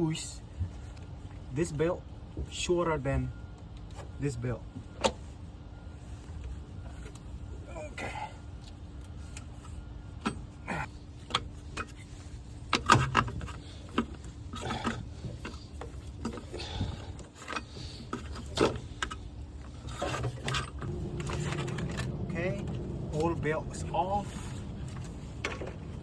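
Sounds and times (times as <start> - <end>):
low hum: 5.5 - 26.0.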